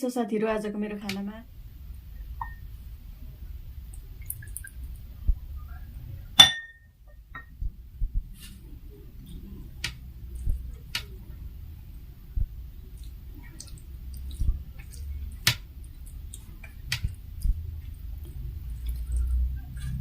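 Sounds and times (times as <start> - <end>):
tableware clinking: 6.4 - 7.5.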